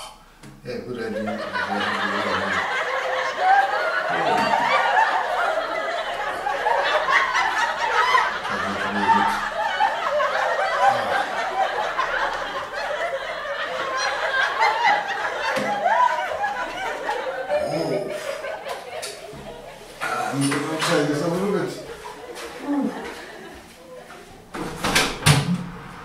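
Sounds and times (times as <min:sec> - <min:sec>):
laugh track: 0:00.9 - 0:24.5.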